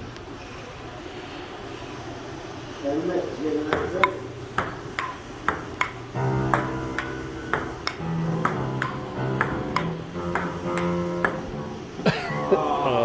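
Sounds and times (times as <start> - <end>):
bright plucked ping: 3.8 - 11.7
held low chords: 5.7 - 13.0.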